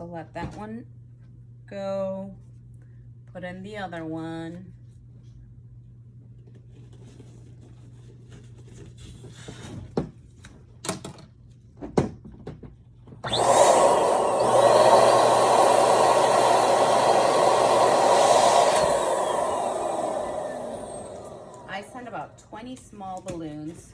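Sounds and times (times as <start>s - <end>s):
electric balloon pump running: 13.2s - 22.4s.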